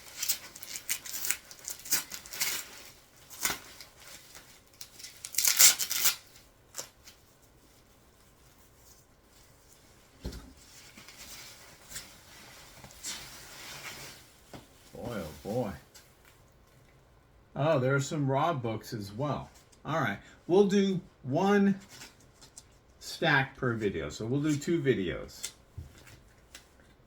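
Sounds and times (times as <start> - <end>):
bubble wrap and tape ripping: 0.0 - 8.9, 10.7 - 15.8.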